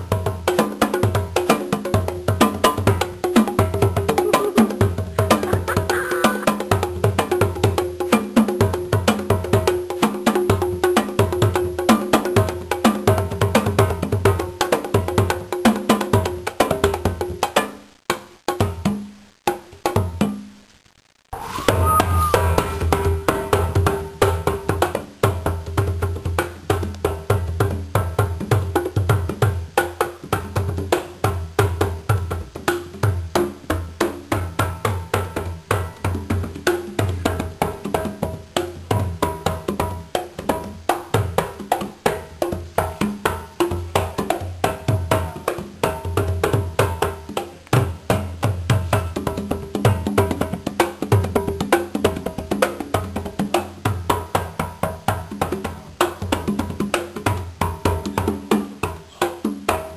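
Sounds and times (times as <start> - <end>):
rapid wood-block strikes: 22.2 - 59.9.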